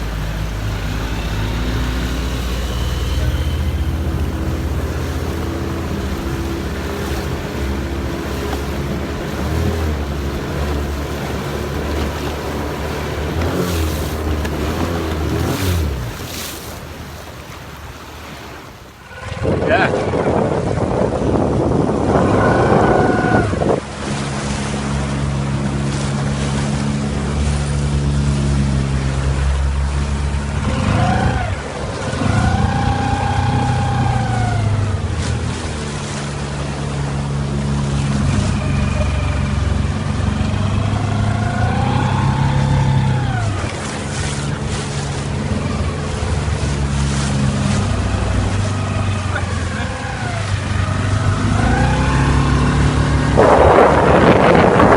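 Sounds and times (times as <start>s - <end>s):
wind noise: 0.0s - 25.4s, 41.7s - 54.9s
outboard motor running: 0.0s - 54.9s
water noise: 0.0s - 54.9s.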